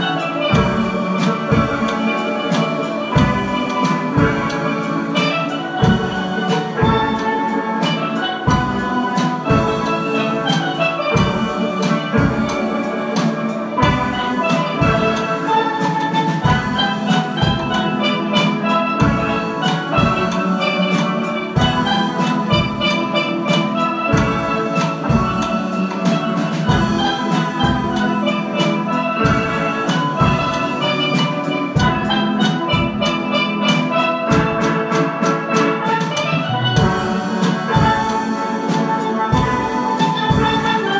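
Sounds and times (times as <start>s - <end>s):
steady drum beat: 0.0s - 40.9s
steelpans playing quick melody: 0.0s - 40.9s.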